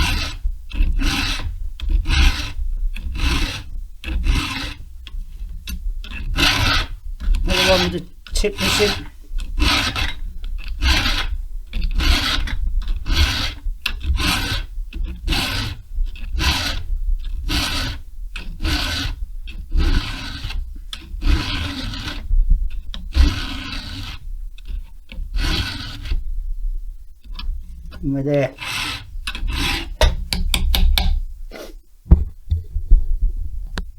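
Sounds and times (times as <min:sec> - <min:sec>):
file sharpening chainsaw chain: 0:05.7 - 0:16.8, 0:17.4 - 0:22.2, 0:23.1 - 0:26.2, 0:28.3 - 0:30.8.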